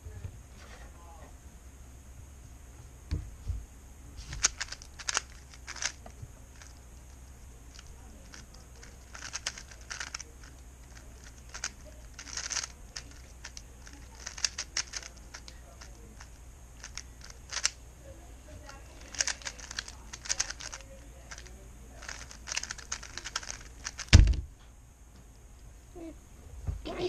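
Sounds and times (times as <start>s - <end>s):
puzzle cube clicking and rasping: 4.3s - 17.8s, 19.0s - 24.2s
low thumps: 24.1s - 24.7s.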